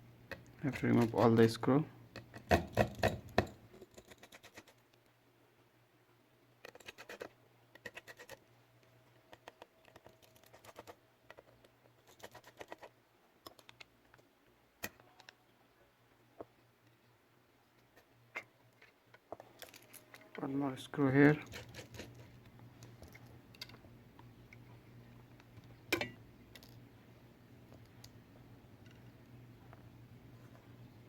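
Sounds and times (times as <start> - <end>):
small tools clicking on screws: 6.6 - 14.2
low steady hum: 13.0 - 31.0.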